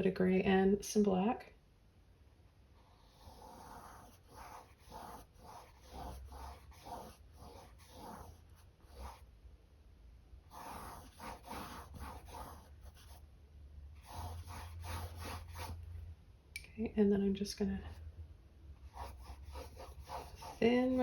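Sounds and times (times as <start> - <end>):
paintbrush strokes through paint: 2.8 - 9.2, 14.0 - 15.8, 18.9 - 21.0.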